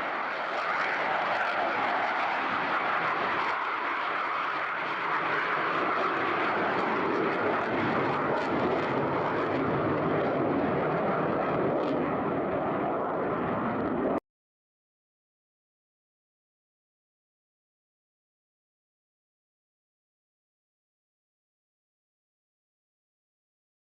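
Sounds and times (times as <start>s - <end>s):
military aircraft engines rushing: 0.0s - 14.2s.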